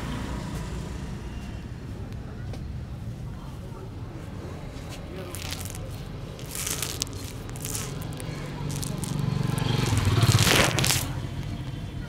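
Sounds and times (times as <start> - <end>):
hands scratching through hair: 5.2 - 11.2.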